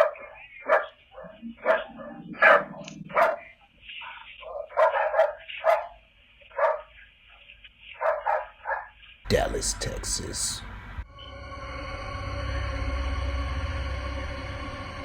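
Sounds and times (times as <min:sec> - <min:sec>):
dog barking: 0:00.0 - 0:03.5, 0:04.4 - 0:07.0, 0:07.9 - 0:08.9.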